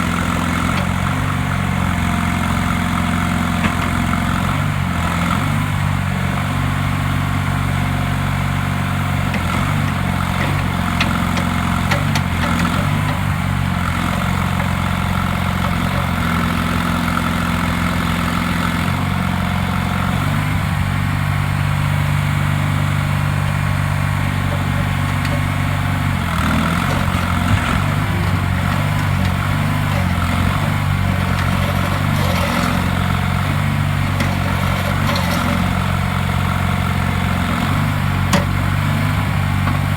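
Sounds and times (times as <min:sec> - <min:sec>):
loader engine running: 0:00.0 - 0:39.9.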